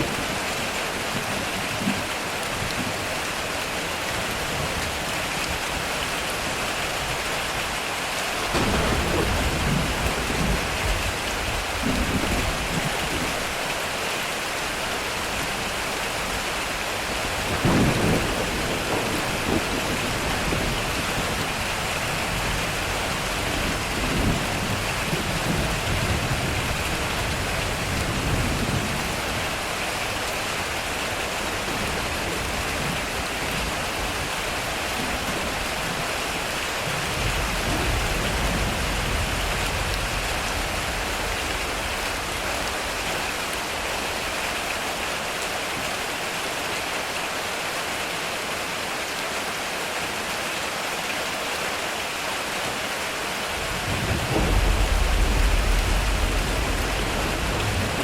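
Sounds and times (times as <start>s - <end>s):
heavy rain on a metal roof: 0.0s - 58.0s
thunder rumbling: 8.5s - 13.5s, 15.4s - 45.1s, 53.5s - 58.0s.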